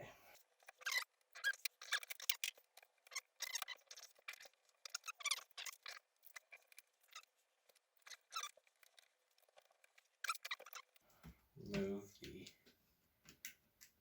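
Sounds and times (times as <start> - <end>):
small laptop parts clicking: 0.4 - 11.2.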